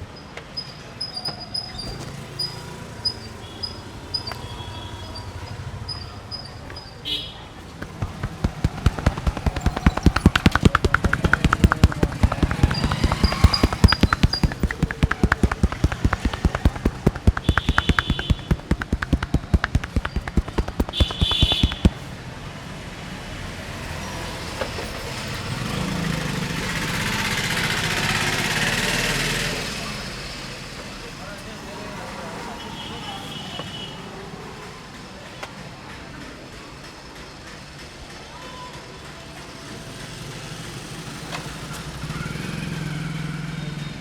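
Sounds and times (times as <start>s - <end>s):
street traffic noise: 0.0s - 44.0s
rapid hand slaps of massage: 7.8s - 22.0s.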